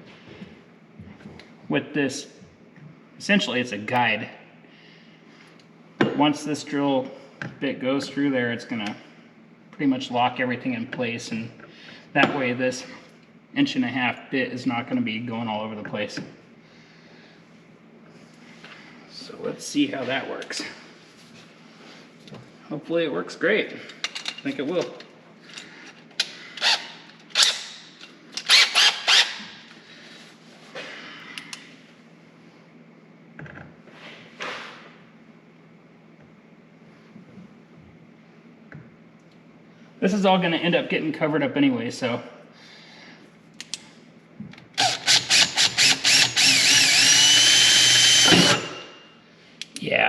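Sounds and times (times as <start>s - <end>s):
drill hole saw cutting plastic: 28.5s - 29.5s, 44.8s - 49.0s.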